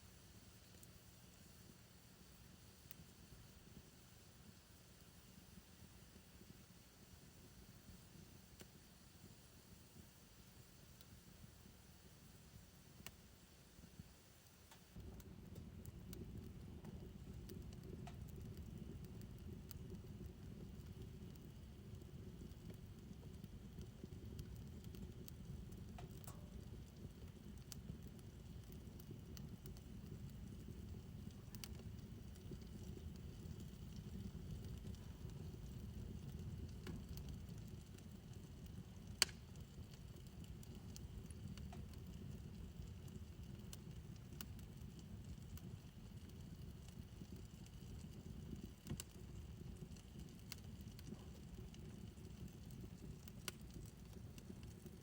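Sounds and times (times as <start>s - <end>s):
fire crackling: 0.0s - 55.0s
fire rumbling: 0.0s - 55.0s
sharp pop of fire: 39.2s - 39.4s.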